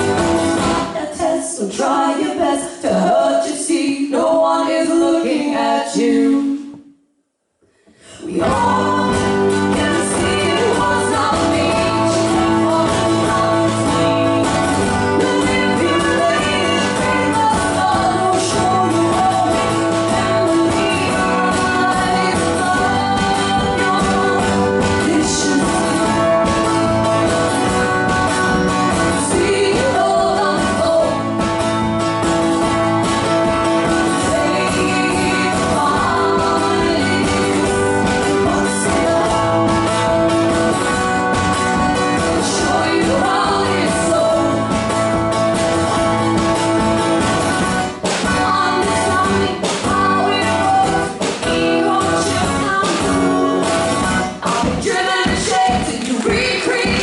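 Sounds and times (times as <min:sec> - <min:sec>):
strummed guitar: 0:00.0 - 0:01.1, 0:08.1 - 0:57.0
person singing: 0:08.1 - 0:31.5, 0:33.6 - 0:45.0, 0:47.4 - 0:57.0.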